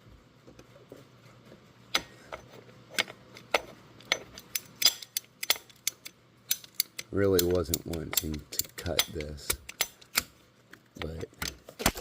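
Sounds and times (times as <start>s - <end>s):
cutting tool clicking: 4.5s - 10.3s.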